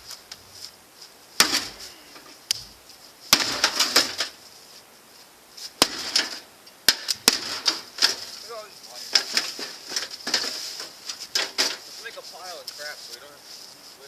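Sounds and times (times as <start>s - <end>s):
loose parts rattling: 7.3s - 12.0s.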